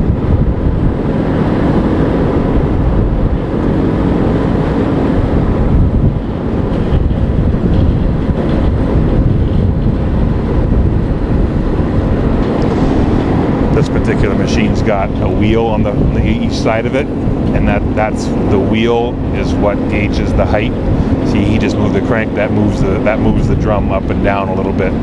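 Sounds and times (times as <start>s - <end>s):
milling machine grinding asphalt: 6.2s - 25.0s.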